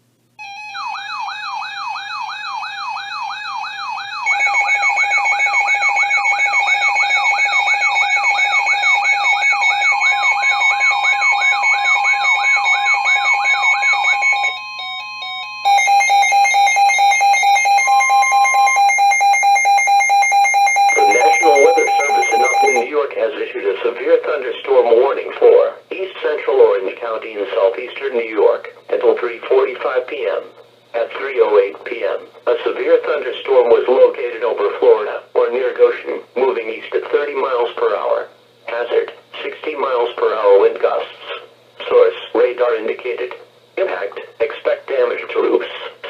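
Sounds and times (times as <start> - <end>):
steady higher alert tones: 0.4 - 22.9
warbling siren tone: 0.4 - 22.9
rapidly pulsing alarm tone: 0.4 - 23.0.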